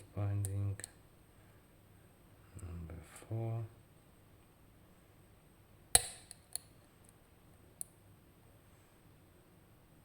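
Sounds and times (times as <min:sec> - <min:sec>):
lock pin clicks: 0:06.0 - 0:06.7.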